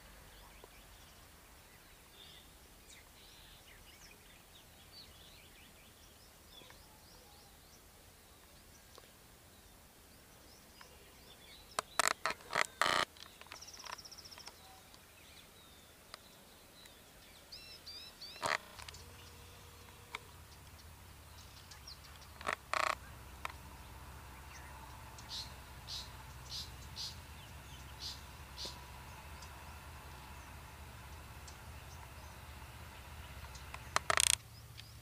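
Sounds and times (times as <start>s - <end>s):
birds trilling and chirping: 8.6s - 35.0s
harsh bird calls: 10.7s - 15.9s, 16.9s - 35.0s.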